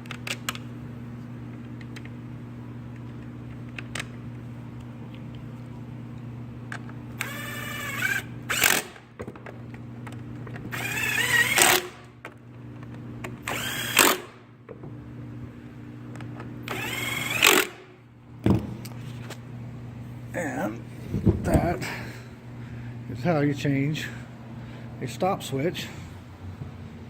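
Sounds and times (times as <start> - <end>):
steady low hum: 0.0 - 27.0
power drill whine: 7.2 - 9.0, 10.7 - 12.0, 13.4 - 14.4, 16.6 - 17.8.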